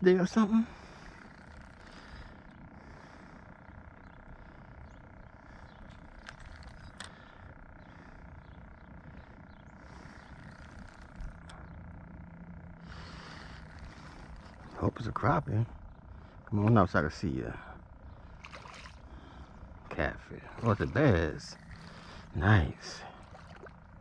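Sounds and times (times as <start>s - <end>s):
faint constant hum: 0.0s - 24.0s
low rumble: 0.0s - 24.0s
faint clicks: 5.3s - 11.9s.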